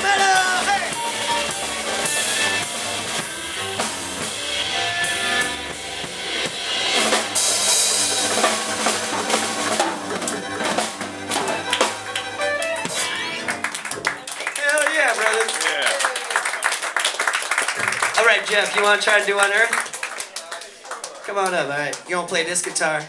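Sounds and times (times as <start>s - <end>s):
guitars: 0.0s - 14.0s
bass guitar: 0.0s - 14.2s
drum kit: 0.0s - 14.2s
violin: 4.4s - 13.8s.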